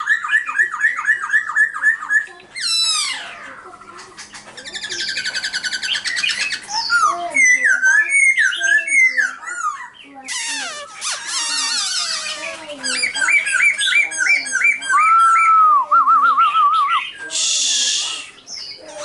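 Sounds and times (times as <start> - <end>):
bird singing whistled phrases: 4.7 - 12.2, 12.9 - 19.0.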